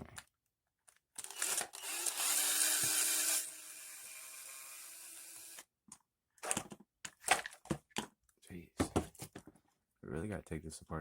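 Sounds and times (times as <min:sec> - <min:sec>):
power drill whining: 0:01.2 - 0:05.7.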